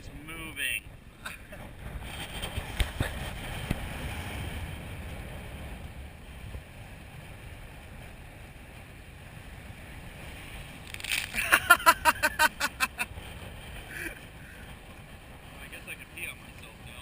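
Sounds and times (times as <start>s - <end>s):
sea surf: 0.0s - 17.0s
wind rumbling on microphone: 0.0s - 17.0s.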